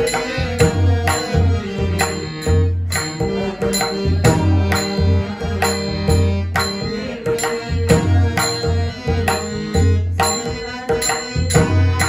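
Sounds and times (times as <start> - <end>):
sustained tones: 0.0 - 12.0.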